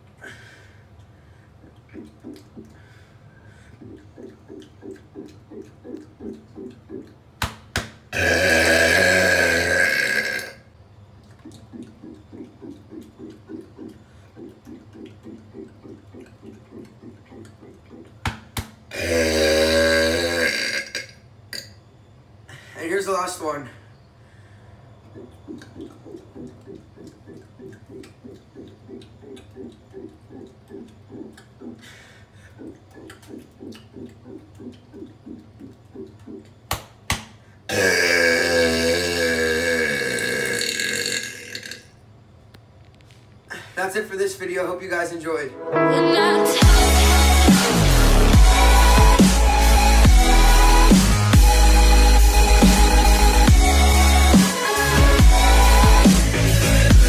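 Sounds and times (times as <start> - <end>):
soft rhythmic sounds: 0.0 - 7.8, 11.1 - 18.7, 24.4 - 37.5
loud burp: 8.1 - 10.7, 18.9 - 21.8, 37.7 - 42.0.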